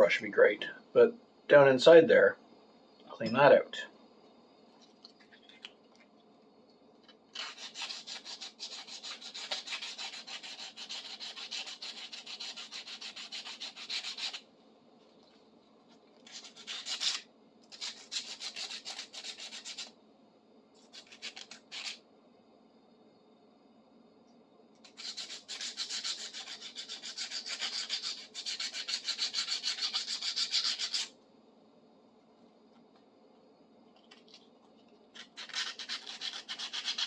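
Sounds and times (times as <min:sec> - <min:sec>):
abrasive rubbing on metal wrench: 0:24.9 - 0:31.1.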